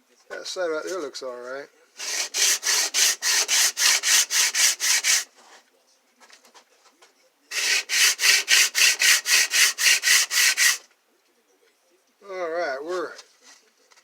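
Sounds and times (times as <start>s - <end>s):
metal scraping on sanding board: 2.0s - 5.3s, 7.5s - 10.8s.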